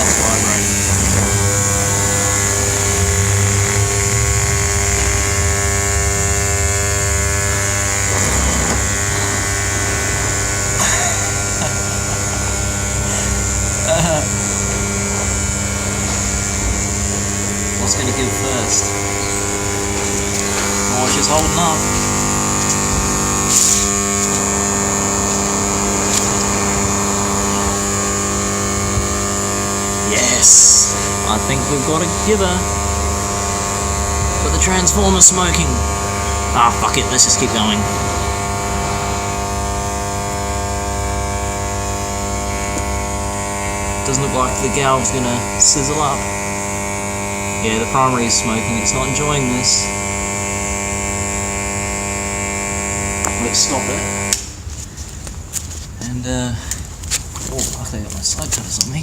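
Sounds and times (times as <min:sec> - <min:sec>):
transformer buzzing: 0:00.0 - 0:59.0.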